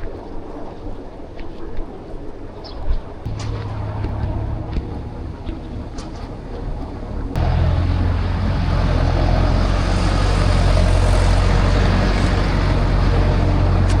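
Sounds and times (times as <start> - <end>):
engine running with low hum: 3.3 - 14.0.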